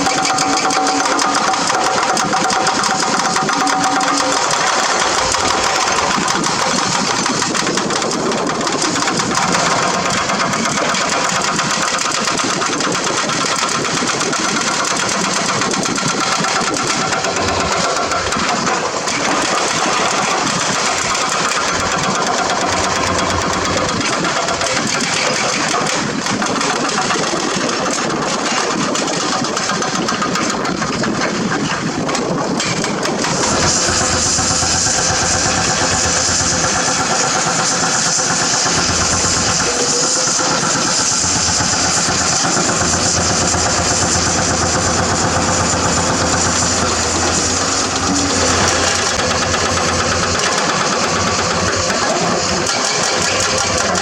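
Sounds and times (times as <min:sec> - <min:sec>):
excavator diesel engine clattering: 0:00.0 - 0:54.0.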